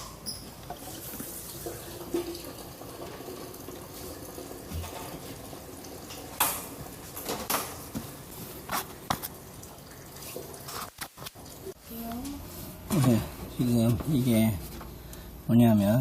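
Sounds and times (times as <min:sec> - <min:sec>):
air-conditioner parts clinking: 0:06.0 - 0:09.3.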